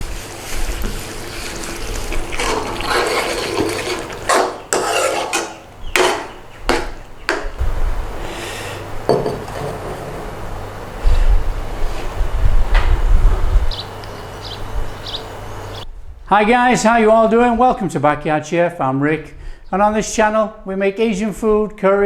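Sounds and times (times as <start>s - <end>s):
steady hiss: 0.0s - 5.8s
utensil knocking against pan: 4.3s - 7.5s, 9.1s - 10.1s.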